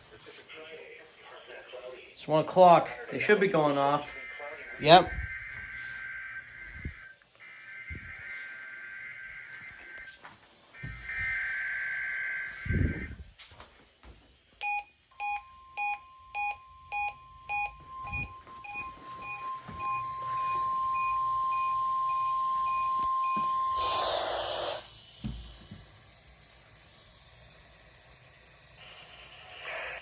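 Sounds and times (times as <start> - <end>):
steady high alarm tone: 1.8 - 13.4, 14.6 - 30.0
alert beeper pipping: 14.6 - 24.8
thump: 25.2 - 25.8.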